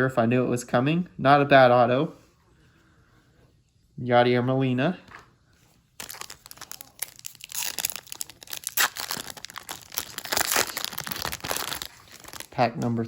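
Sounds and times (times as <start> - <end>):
wrapper crinkling and tearing: 6.0 - 12.9.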